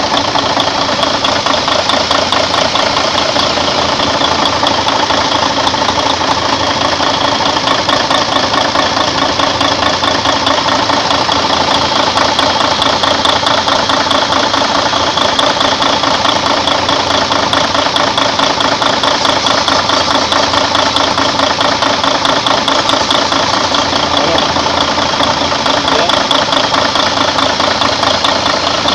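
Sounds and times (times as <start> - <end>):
truck diesel engine idling: 0.0 - 28.9.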